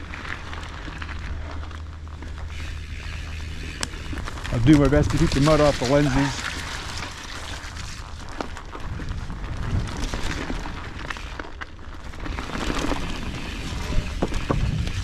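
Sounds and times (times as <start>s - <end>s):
tyre noise on dirt: 0.0s - 15.0s
bike knocks and rattles: 0.3s - 15.0s
wind buffeting microphone: 13.3s - 15.0s.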